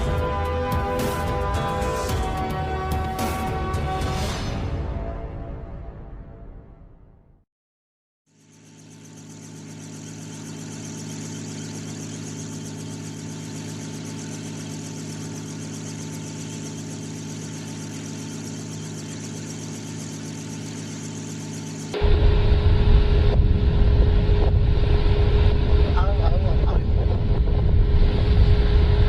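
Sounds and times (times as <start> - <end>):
engine running steadily: 8.3 - 29.0.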